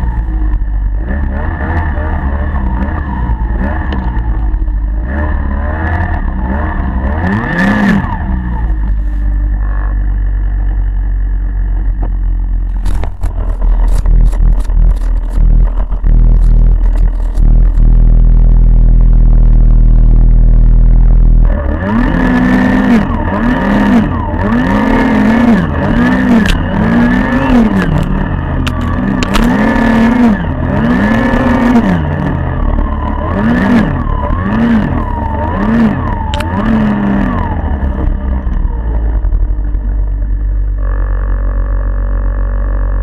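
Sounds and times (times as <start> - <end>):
snowmobile engine revving: 0.0 - 10.3, 20.3 - 43.0.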